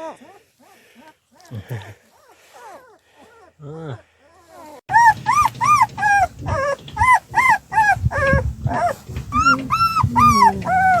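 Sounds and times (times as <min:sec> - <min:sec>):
puppies crying: 0:00.0 - 0:01.5, 0:02.1 - 0:03.6, 0:04.2 - 0:11.0
low rustling: 0:04.9 - 0:11.0.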